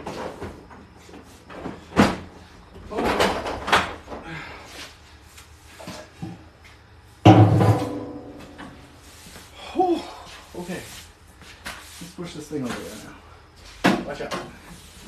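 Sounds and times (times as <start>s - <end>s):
loud ringing bang: 7.2s - 8.7s.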